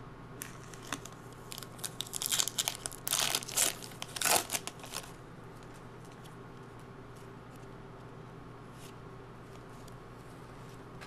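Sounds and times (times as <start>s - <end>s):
wrapper tearing and crinkling: 0.4s - 5.2s.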